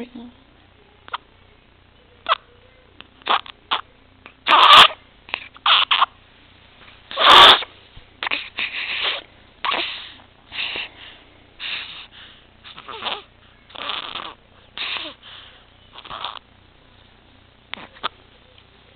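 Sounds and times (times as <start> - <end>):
baby gasping breaths: 8.2 - 12.9.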